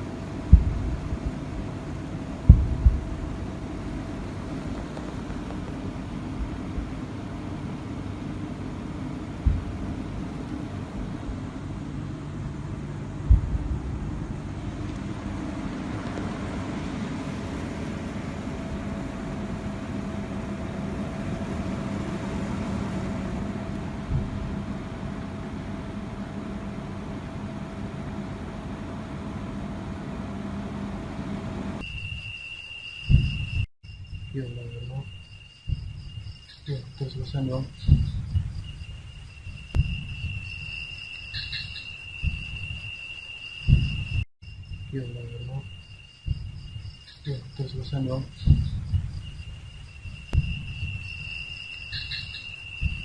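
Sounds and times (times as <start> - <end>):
crickets chirring: 0.0 - 11.2, 14.3 - 53.0
low background rumble: 0.0 - 31.9, 33.0 - 53.0
faint hum: 0.0 - 53.0
low thud: 0.4 - 1.4, 2.4 - 3.5, 9.4 - 9.9, 13.2 - 14.2, 24.0 - 24.7, 33.1 - 33.6, 35.6 - 36.3, 37.8 - 38.7, 39.6 - 40.4, 43.7 - 44.2, 46.2 - 46.8, 48.4 - 49.2, 50.2 - 51.0
short low thump: 0.5 - 1.4, 2.4 - 3.4, 9.4 - 9.9, 13.2 - 14.0, 24.0 - 24.7, 33.1 - 33.6, 35.6 - 36.1, 37.8 - 38.6, 39.7 - 40.4, 43.7 - 44.2, 48.4 - 49.2, 50.3 - 50.9.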